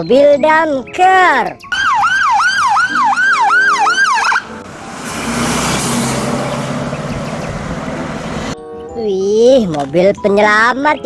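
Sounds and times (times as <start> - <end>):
electronic siren wailing: 1.8 - 4.5
hissing rushing noise: 3.7 - 8.6.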